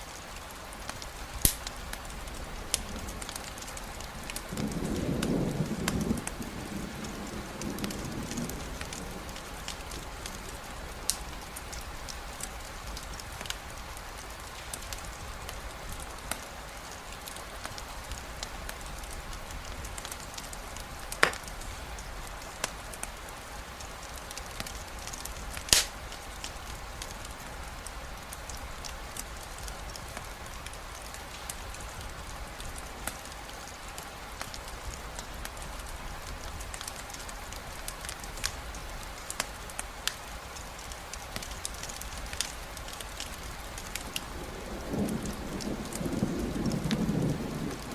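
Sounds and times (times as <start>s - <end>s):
campfire crackling and popping: 0.0s - 47.9s
steady rainfall: 0.0s - 47.9s
low thunder rumble: 1.8s - 13.8s, 43.4s - 47.9s.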